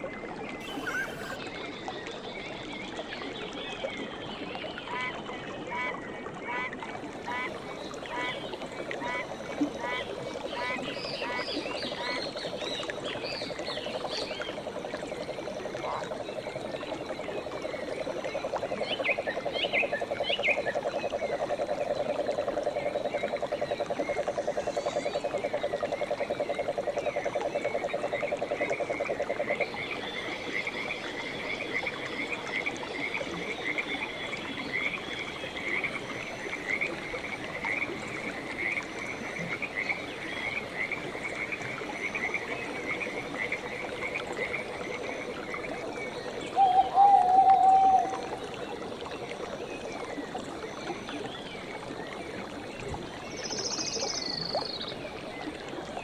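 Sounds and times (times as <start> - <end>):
frog low pulsing trill: 0.6 - 1.4
frogs chirping: 0.6 - 1.4, 7.3 - 50.8.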